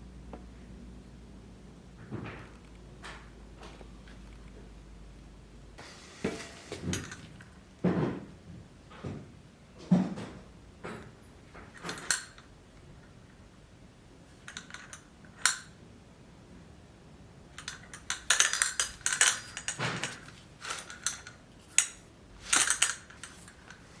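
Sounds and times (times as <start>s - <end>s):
hard objects knocking and clinking: 17.6s - 24.0s.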